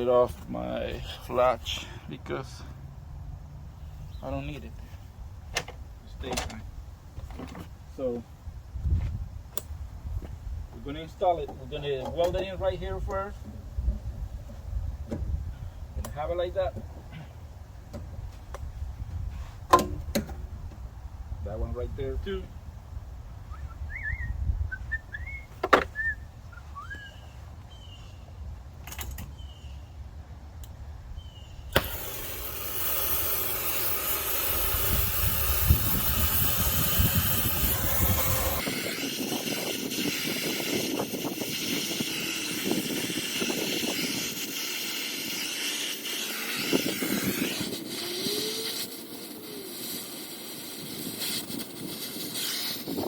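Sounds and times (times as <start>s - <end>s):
birds chirping: 23.4s - 28.4s, 29.2s - 30.1s, 31.1s - 31.7s
torch flame hissing: 31.7s - 42.3s, 45.3s - 53.0s.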